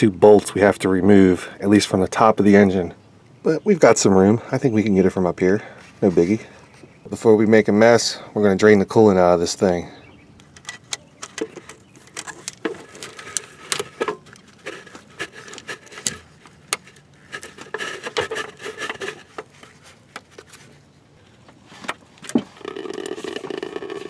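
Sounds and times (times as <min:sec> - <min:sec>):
tools clicking and knocking: 0:10.5 - 0:20.5
scraping of tools and parts: 0:10.5 - 0:24.0.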